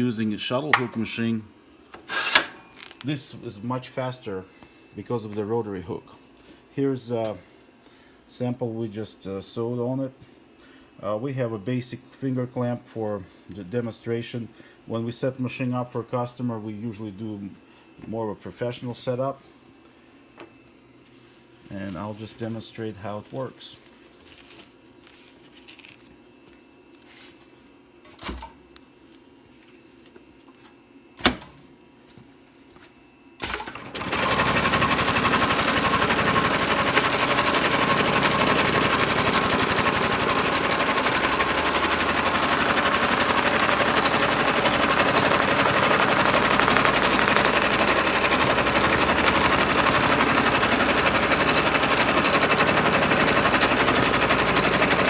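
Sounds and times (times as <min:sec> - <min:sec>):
sewing machine rattling: 0:33.4 - 0:55.0.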